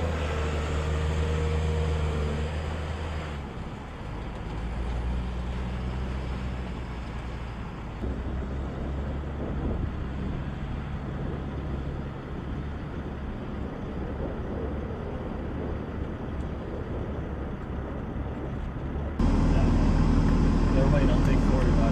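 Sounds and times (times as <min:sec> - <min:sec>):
low engine rumble: 0:00.0 - 0:21.9
noisy rush: 0:07.6 - 0:21.9.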